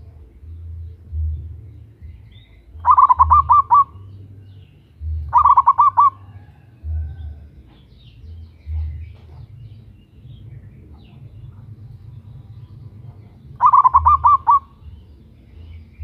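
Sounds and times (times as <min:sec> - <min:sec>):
low pulsing sound: 0:00.0 - 0:16.0
dove cooing: 0:02.6 - 0:07.8, 0:13.0 - 0:15.0.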